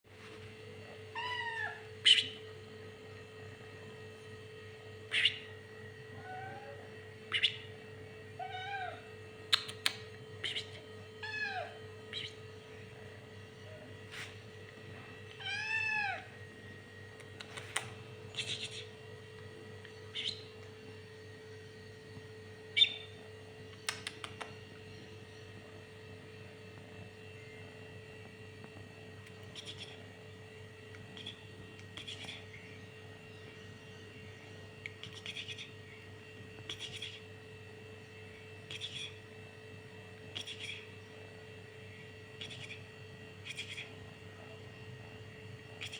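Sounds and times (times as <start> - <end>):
electrical hum: 0.1 - 45.9
cat meowing: 1.1 - 2.0, 6.2 - 6.9, 8.4 - 9.1, 11.2 - 11.8, 15.3 - 16.4.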